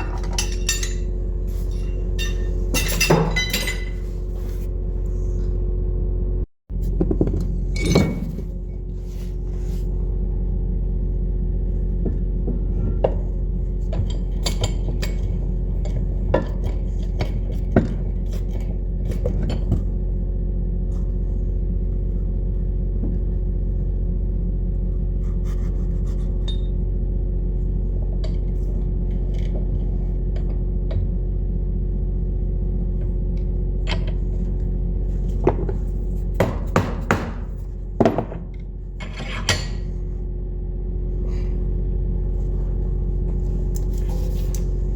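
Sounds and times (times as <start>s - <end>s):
tools clinking on metal: 0.0s - 4.0s
low machine drone: 0.0s - 44.9s.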